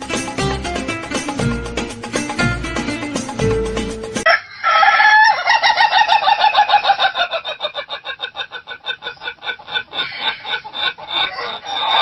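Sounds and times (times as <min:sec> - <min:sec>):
music: 0:00.0 - 0:04.3
rooster crowing: 0:04.2 - 0:07.7, 0:10.0 - 0:12.0
rooster clucking: 0:04.3 - 0:12.0.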